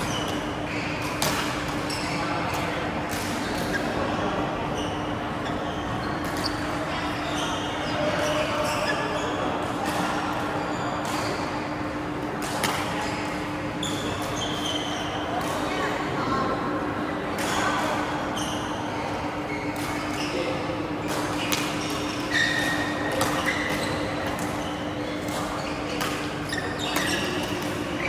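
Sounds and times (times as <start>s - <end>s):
shoes squeaking on court: 0.0s - 4.1s, 4.7s - 12.0s, 12.6s - 16.2s, 17.4s - 28.0s
racket hitting shuttlecock: 21.1s - 24.6s.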